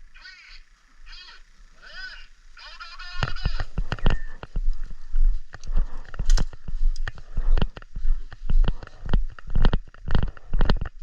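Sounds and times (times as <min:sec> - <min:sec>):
footsteps jogging: 0:03.1 - 0:11.0
gear rustling and knocking: 0:03.4 - 0:11.0.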